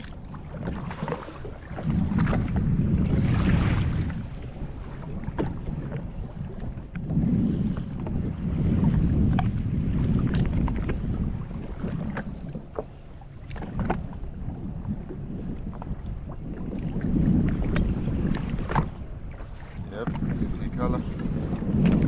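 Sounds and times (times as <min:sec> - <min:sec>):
water lapping against hull: 0:00.0 - 0:22.0
water splashes: 0:00.0 - 0:22.0
wind buffeting microphone: 0:00.0 - 0:22.0
small clicks: 0:11.6 - 0:12.8, 0:18.8 - 0:19.6.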